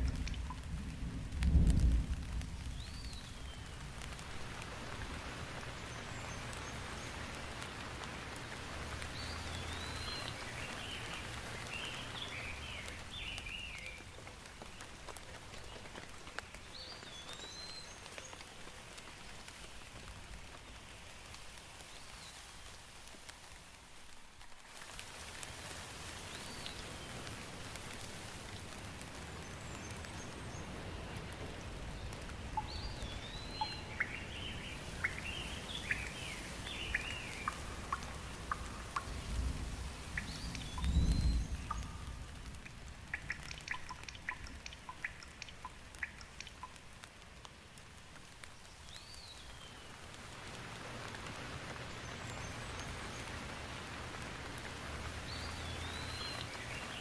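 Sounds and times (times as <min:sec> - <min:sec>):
steady rain falling: 0:00.0 - 0:57.0
birds chirping: 0:04.5 - 0:14.9, 0:29.3 - 0:42.3, 0:43.1 - 0:46.7, 0:54.7 - 0:57.0.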